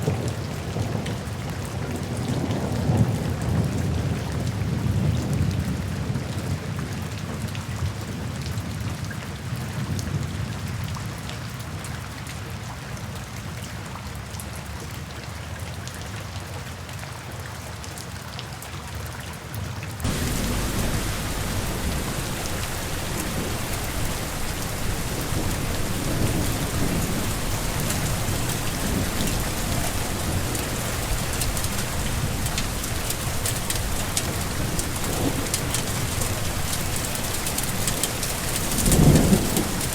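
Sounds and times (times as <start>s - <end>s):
rain pattering: 0.0s - 12.1s, 20.0s - 39.9s
distant thunder rumble: 20.1s - 39.9s.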